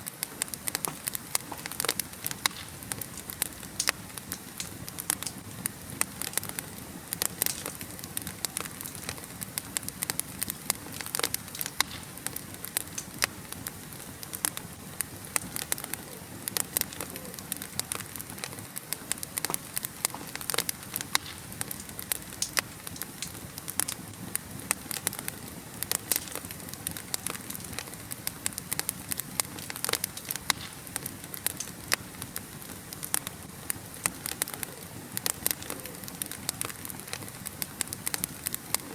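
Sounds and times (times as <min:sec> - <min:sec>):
logs crackling and popping: 0:00.0 - 0:38.9
wood fire hissing: 0:00.0 - 0:38.9.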